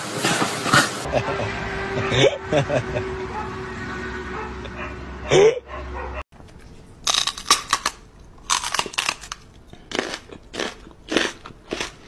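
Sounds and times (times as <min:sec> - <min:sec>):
crunching: 0:06.4 - 0:12.0.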